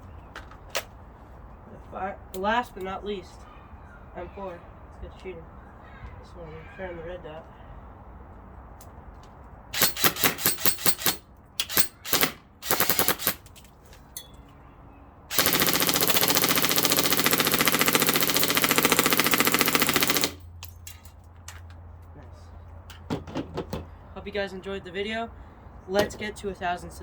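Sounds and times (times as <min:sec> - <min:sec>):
airsoft rifle firing: 0:09.8 - 0:13.4, 0:15.3 - 0:20.4.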